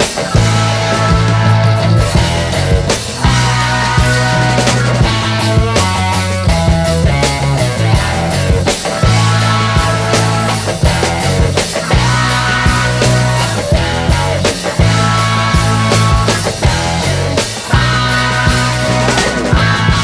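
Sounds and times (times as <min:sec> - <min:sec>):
drum hits: 0:00.0 - 0:20.0
music with heavy bass: 0:00.0 - 0:20.0.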